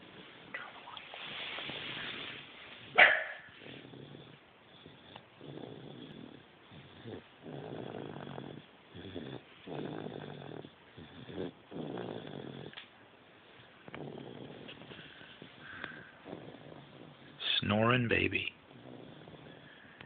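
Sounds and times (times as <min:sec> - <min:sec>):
baby snoring: 0:03.8 - 0:12.8, 0:13.9 - 0:17.6.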